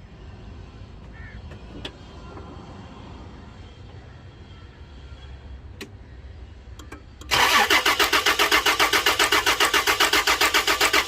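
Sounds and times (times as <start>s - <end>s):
car engine cranking without starting: 6.8s - 11.0s.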